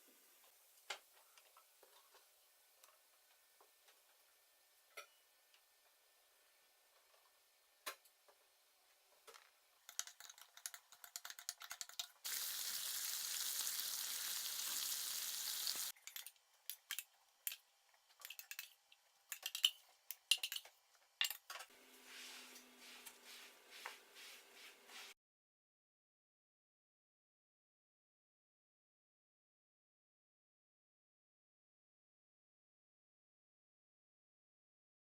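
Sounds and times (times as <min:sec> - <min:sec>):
food sizzling in a pan: 0:12.2 - 0:16.0.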